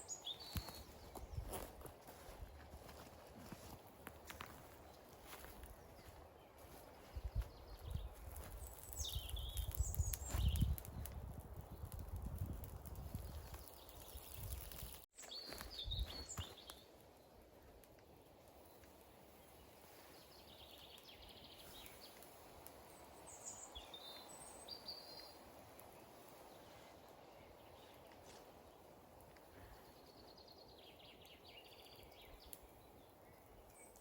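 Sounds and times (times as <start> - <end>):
small birds chirping: 0.0 - 34.0.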